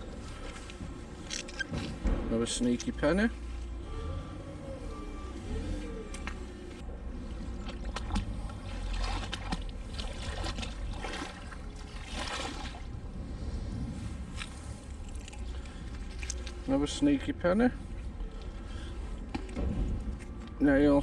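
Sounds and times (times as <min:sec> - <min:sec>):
water sloshing and trickling: 0:00.0 - 0:21.0
water splashing: 0:07.2 - 0:13.1.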